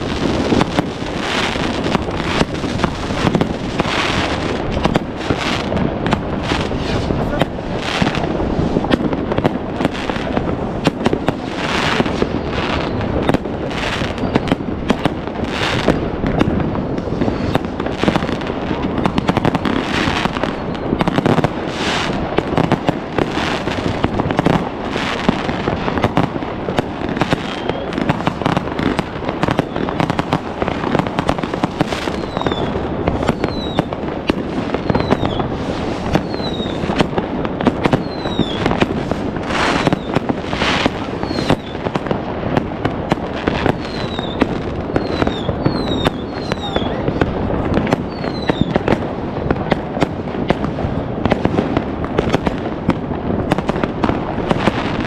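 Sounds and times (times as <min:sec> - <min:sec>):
fireworks bangs and crackling: 0:00.0 - 0:55.0
falling firework whistles: 0:11.1 - 0:16.0, 0:16.8 - 0:18.3, 0:19.1 - 0:22.7, 0:27.2 - 0:30.4, 0:31.2 - 0:34.0, 0:34.7 - 0:37.2, 0:37.8 - 0:42.0, 0:43.1 - 0:47.0, 0:47.9 - 0:49.0.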